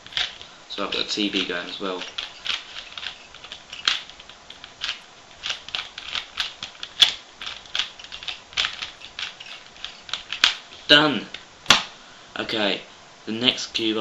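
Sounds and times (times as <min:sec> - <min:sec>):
puzzle cube layers clicking: 0:00.0 - 0:10.6.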